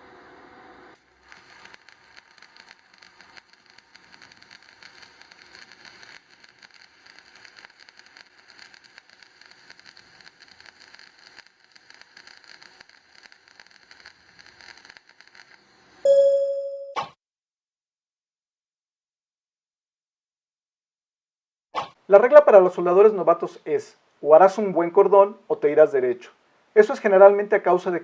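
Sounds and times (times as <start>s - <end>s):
welding arc crackling: 1.0s - 14.3s.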